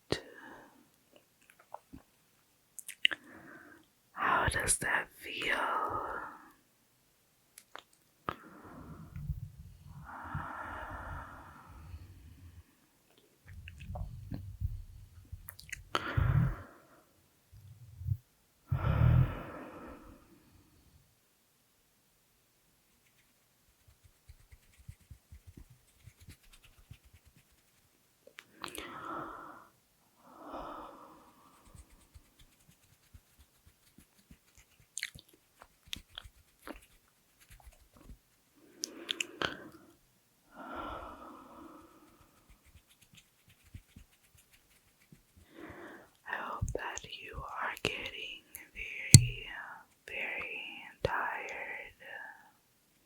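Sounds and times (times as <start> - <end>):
mouth clicks and lip smacks: 1.1 - 2.1, 2.8 - 3.3, 7.6 - 8.4, 13.1 - 14.5, 15.4 - 16.0, 34.5 - 36.8, 38.8 - 39.6, 46.6 - 47.1, 47.7 - 50.1
wet mouth clicks and lip smacks: 1.4 - 2.0, 2.8 - 3.2, 7.6 - 8.0, 13.5 - 14.0, 15.5 - 15.8, 34.9 - 36.8, 39.1 - 39.3, 49.1 - 49.6
deep heavy breathing: 10.0 - 12.7, 18.7 - 20.4.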